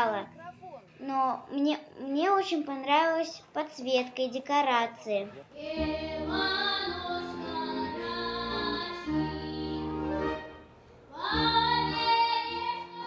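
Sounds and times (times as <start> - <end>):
instrumental accompaniment: 5.6 - 13.0.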